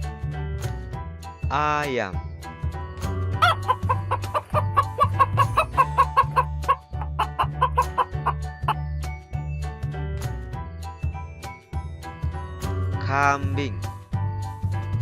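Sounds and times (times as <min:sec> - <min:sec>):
background music: 0:00.0 - 0:15.0
chicken clucking: 0:03.4 - 0:08.8.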